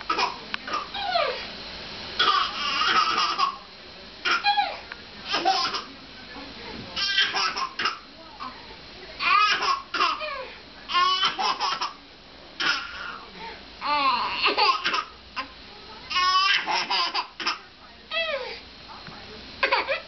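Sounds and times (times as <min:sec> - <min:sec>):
baby laughing: 0:02.2 - 0:03.6, 0:04.2 - 0:05.9, 0:07.0 - 0:08.0, 0:09.2 - 0:12.0, 0:13.9 - 0:15.1, 0:16.1 - 0:17.6, 0:19.6 - 0:20.0.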